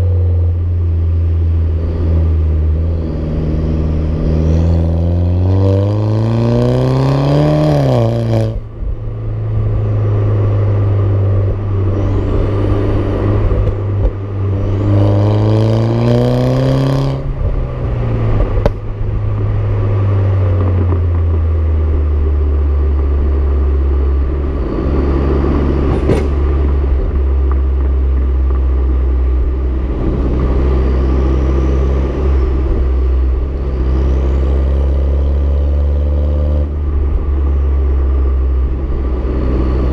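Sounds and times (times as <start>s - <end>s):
car engine accelerating: 0.0s - 39.9s
road noise: 0.0s - 39.9s.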